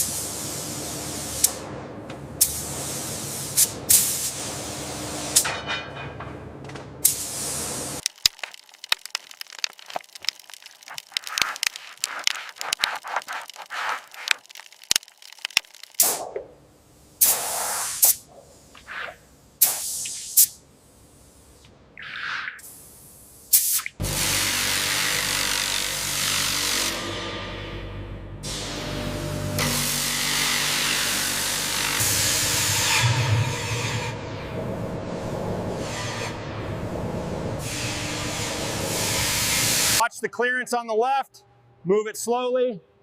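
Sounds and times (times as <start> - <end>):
sharp cracks and crackles: 8.0 - 16.4
sharp pops: 8.0 - 16.5
spray gun hissing: 11.2 - 14.3, 17.2 - 18.2, 19.6 - 20.6.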